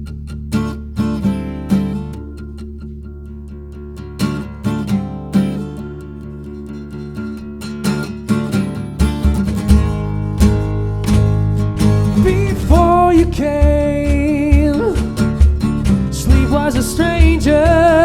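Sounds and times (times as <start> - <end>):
strummed acoustic guitar: 0.0 - 18.0
deep bass notes: 9.2 - 18.0
person singing: 11.9 - 18.0.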